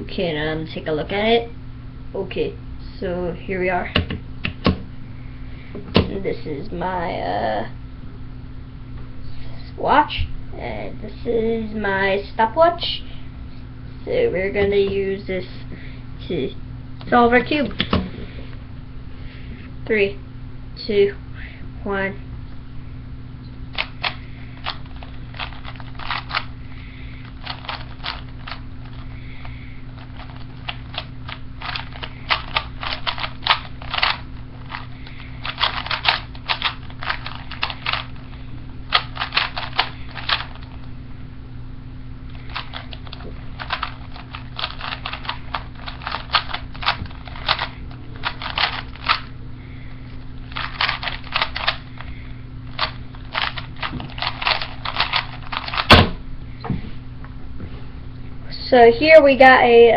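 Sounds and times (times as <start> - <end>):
steady low hum: 0.0 - 59.9
rapid plastic clicking of puzzle cube: 23.8 - 26.5, 27.3 - 29.0, 30.0 - 38.2, 38.9 - 40.8, 42.3 - 49.3, 50.5 - 52.1, 52.7 - 56.0.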